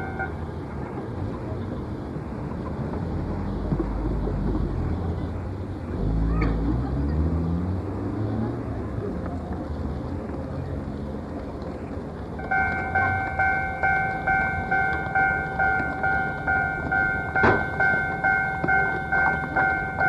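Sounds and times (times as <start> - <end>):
level crossing bell ringing: 12.4 - 20.0.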